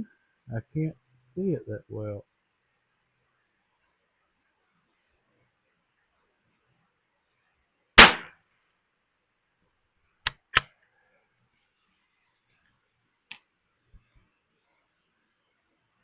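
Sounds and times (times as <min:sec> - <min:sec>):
rifle shot crack: 0:08.0 - 0:08.3.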